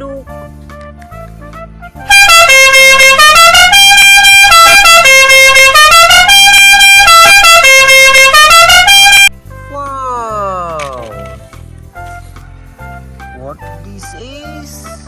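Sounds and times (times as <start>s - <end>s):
multi-tone musical air horn: 1.2s - 9.7s.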